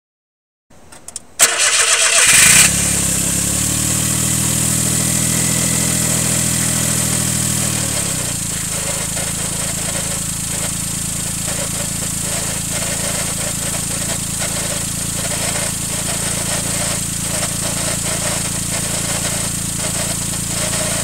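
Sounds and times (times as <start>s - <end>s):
starter cranking: 1.4s - 3.0s
engine idling with droning hum: 1.8s - 21.0s.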